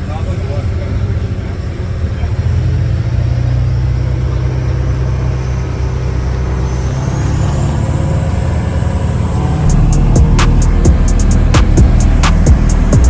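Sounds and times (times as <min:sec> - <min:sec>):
vehicle engine rumbling: 0:00.0 - 0:13.0
faint high whine rising: 0:03.9 - 0:13.0
music with drum beat: 0:09.7 - 0:13.0.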